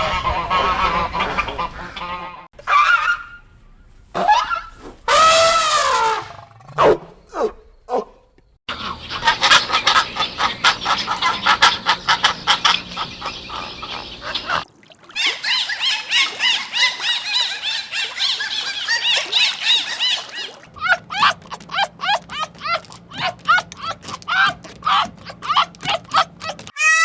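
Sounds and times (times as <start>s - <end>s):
animals calling: 0.0s - 14.6s, 15.2s - 27.0s.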